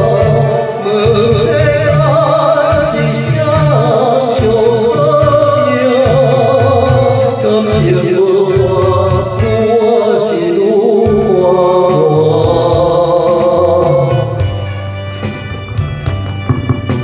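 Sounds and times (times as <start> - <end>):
pop song melody with vibrato: 0.0 - 17.0
pulsing bass beat: 14.3 - 17.0.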